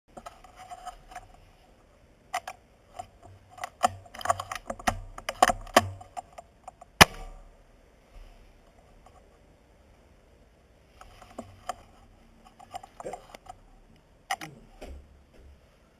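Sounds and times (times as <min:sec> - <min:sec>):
rifle handling clicks and rattles: 0:02.3 - 0:07.3
sharp crack with ringing tail: 0:07.0 - 0:07.5.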